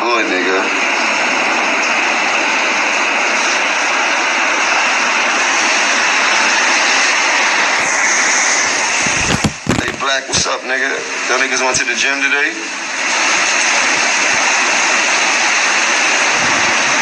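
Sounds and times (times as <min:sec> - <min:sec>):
loud rushing noise: 0:00.6 - 0:10.2.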